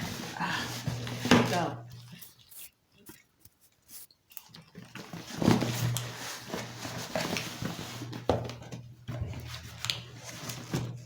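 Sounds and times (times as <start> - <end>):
cardboard packaging rustling: 0.0 - 2.4, 4.8 - 11.0.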